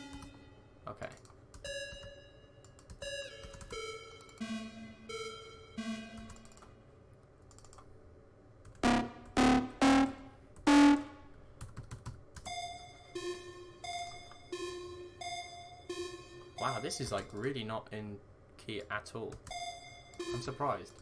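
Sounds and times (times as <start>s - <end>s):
bell-like synthesizer notes: 0.0s - 0.8s, 1.6s - 6.8s, 8.8s - 11.3s, 12.5s - 17.4s, 19.5s - 21.0s
loud pitched synthesizer hits: 8.8s - 11.2s.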